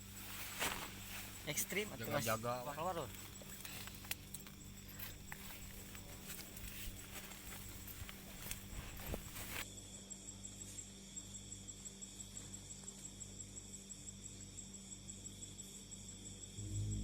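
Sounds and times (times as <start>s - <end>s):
rustling: 0.0s - 9.6s
night insects chirring: 0.0s - 17.0s
low hum: 16.5s - 17.0s.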